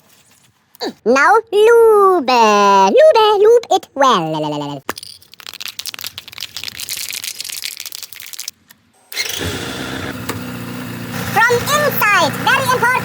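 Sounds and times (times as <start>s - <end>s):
spray hissing spurts: 5.4s - 8.5s
motorcycle engine idling: 9.7s - 13.0s.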